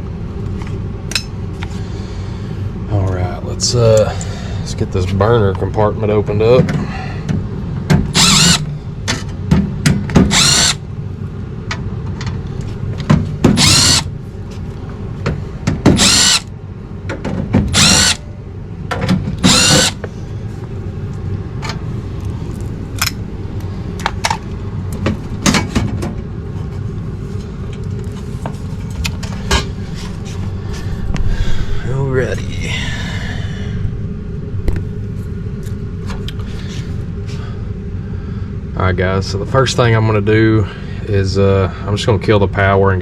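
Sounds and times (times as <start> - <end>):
steady low hum: 0.0 - 43.0
cordless drill whirring: 8.1 - 8.7, 10.2 - 10.8, 13.6 - 14.1, 15.9 - 16.5, 17.7 - 18.2, 19.4 - 20.0.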